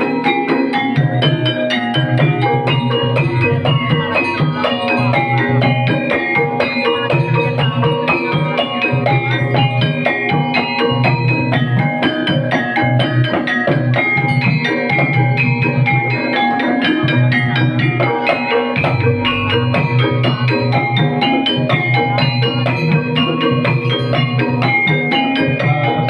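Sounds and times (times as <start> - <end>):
drumming: 0.0 - 26.0
gamelan keyed percussion: 0.0 - 26.0
low recurring beat: 1.0 - 16.2, 16.8 - 26.0.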